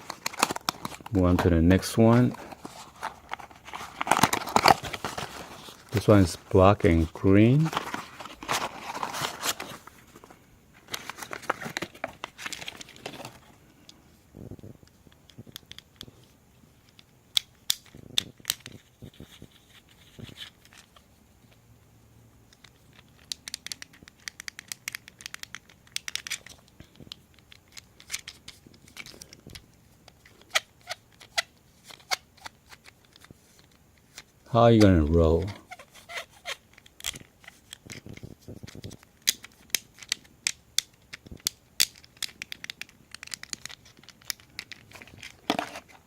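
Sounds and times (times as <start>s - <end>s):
plastic packaging crinkling and tearing: 0.0s - 13.6s.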